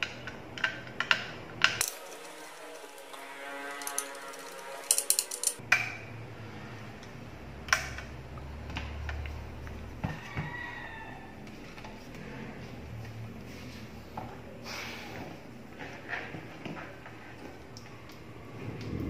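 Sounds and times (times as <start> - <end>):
small hard parts clicking: 0.0 - 5.6.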